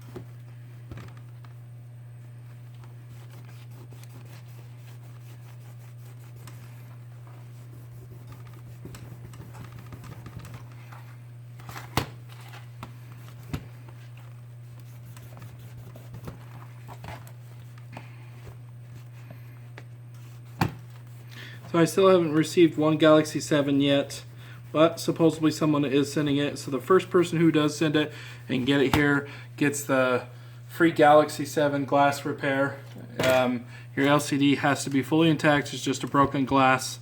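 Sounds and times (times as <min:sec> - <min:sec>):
scratching adhesive residue: 0:03.1 - 0:06.8.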